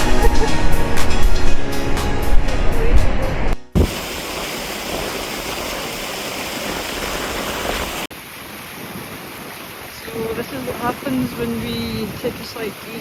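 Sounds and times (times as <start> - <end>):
waterfall rushing: 3.8 - 13.0.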